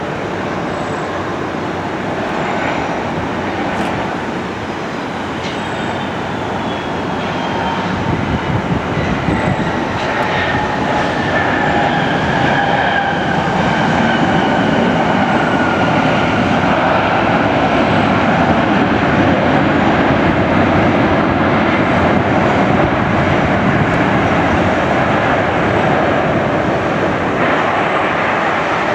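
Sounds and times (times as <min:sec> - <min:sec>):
jet engine roar with whine: 0:00.0 - 0:28.9.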